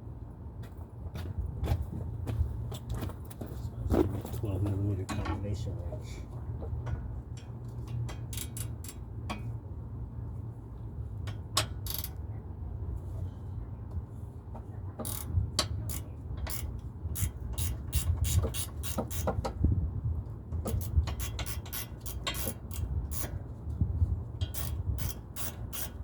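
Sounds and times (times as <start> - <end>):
steady low rumble: 0.0 - 26.0
wrench clicking on metal bolt: 7.9 - 9.5, 11.3 - 12.2, 15.0 - 19.5, 20.6 - 23.4, 24.4 - 26.0.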